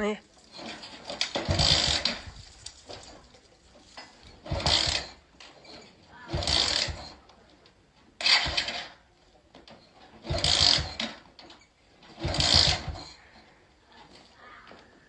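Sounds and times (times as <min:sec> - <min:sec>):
motorcycle kick-start rattle: 0:00.3 - 0:15.0.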